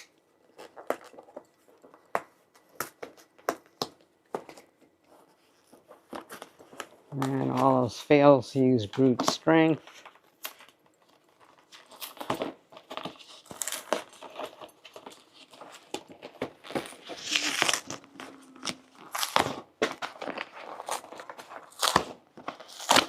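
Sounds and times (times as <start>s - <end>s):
cardboard box tearing and cracking: 11.8s - 23.0s.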